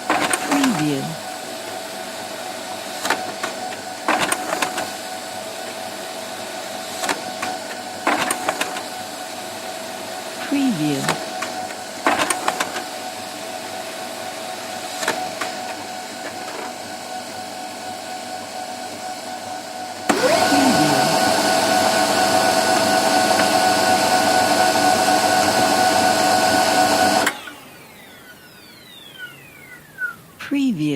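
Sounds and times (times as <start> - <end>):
printer mechanism humming: 0.0 - 30.4
printer clicks: 0.1 - 0.6, 3.0 - 5.0, 7.0 - 8.9, 11.0 - 12.9, 15.0 - 16.7.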